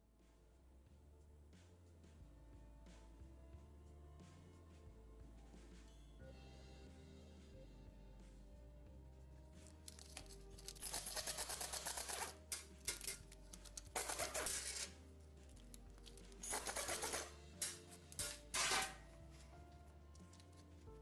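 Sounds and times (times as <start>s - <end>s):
quiet background music: 0.0s - 21.0s
ratchet wrench clicking: 16.4s - 18.3s.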